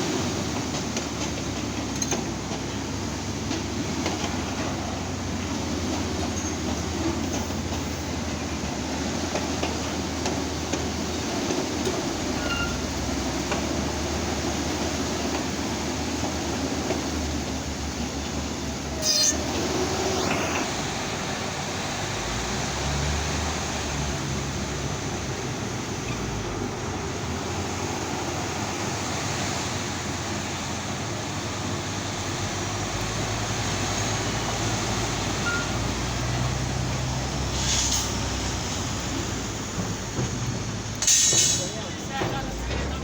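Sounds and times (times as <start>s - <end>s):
heavy engines running: 0.0s - 43.0s
road traffic: 0.0s - 43.0s
short hiss: 19.0s - 20.7s, 37.6s - 38.3s, 41.0s - 41.8s.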